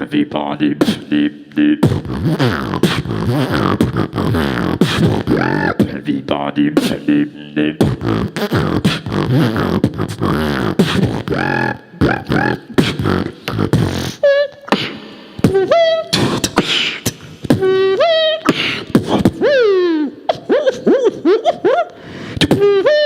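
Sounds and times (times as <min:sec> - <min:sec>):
person beatboxing: 0:00.0 - 0:23.0
sliding high-pitched vocal tones: 0:00.0 - 0:23.0.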